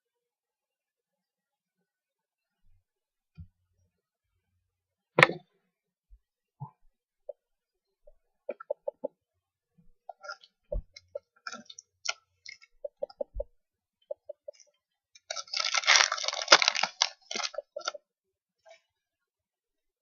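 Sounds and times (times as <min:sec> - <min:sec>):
rustling and crinkling: 0:14.5 - 0:18.0.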